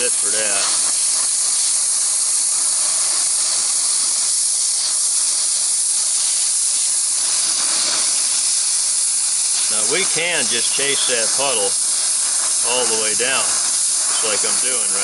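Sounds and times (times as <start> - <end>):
welding torch flame hissing: 0.0 - 15.0.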